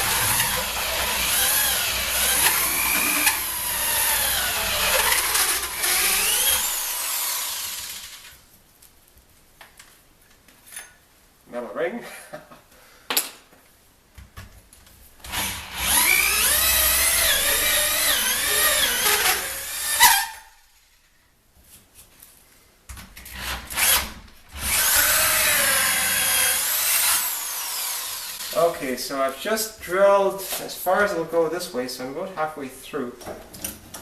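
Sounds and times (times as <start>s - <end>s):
drill clicks: 0.0s - 8.2s
hole saw squealing through metal: 17.0s - 20.6s.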